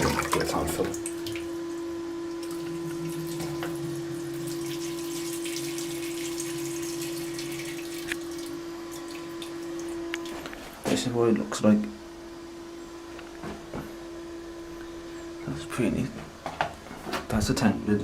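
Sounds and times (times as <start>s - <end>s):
water running into cistern: 0.0s - 10.5s.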